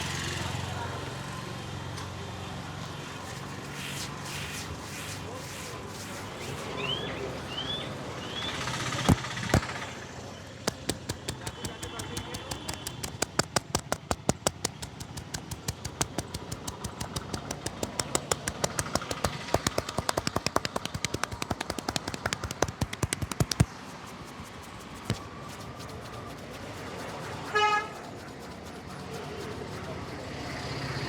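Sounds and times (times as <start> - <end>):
street background noise: 0.0 - 31.0
hands slapping and chopping: 9.0 - 9.8, 10.6 - 25.9
car horn honk: 27.5 - 27.9.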